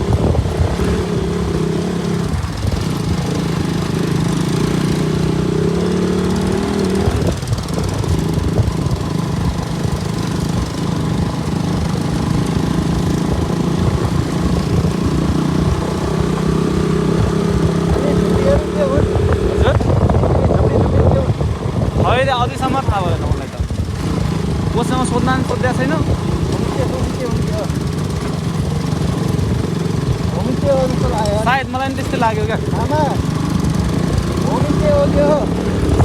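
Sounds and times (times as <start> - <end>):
motorcycle engine running: 0.0 - 36.0.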